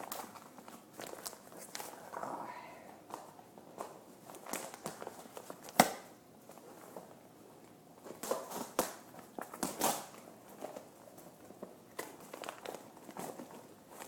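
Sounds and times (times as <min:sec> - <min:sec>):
package rustling and crinkling: 0:00.0 - 0:02.2, 0:08.0 - 0:14.0.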